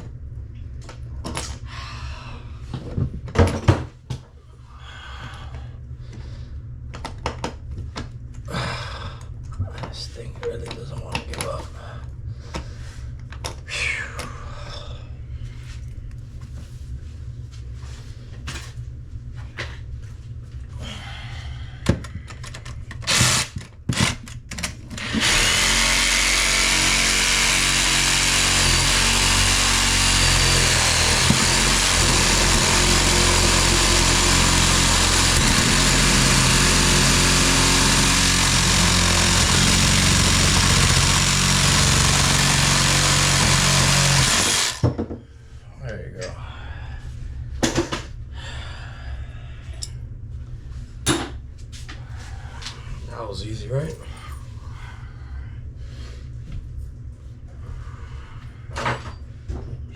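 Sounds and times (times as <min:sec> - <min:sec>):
power saw cutting metal: 0:23.1 - 0:24.2, 0:25.0 - 0:44.8.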